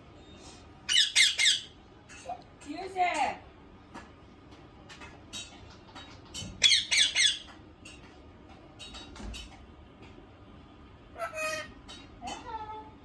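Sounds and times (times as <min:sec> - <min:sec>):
parrot squawking harshly: 0:00.9 - 0:01.8, 0:06.6 - 0:07.4, 0:11.2 - 0:11.8
parrot chirps and clicks: 0:03.9 - 0:08.2.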